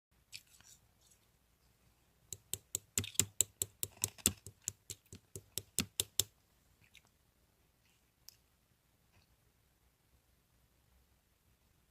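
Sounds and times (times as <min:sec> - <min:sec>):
sharp clicks: 0:02.3 - 0:06.3.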